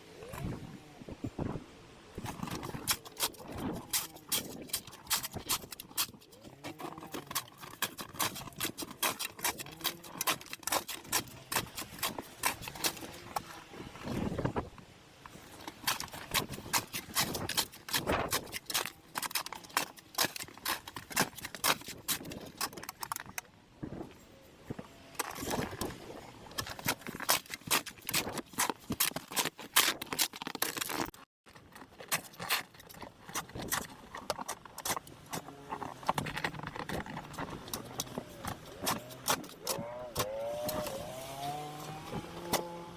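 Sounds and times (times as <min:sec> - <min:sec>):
shovel scraping snow: 0:02.2 - 0:14.6, 0:15.3 - 0:23.0, 0:35.0 - 0:42.9.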